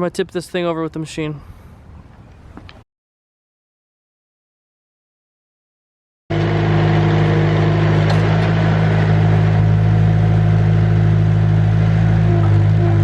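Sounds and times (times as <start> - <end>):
diesel engine running loud: 6.3 - 13.0.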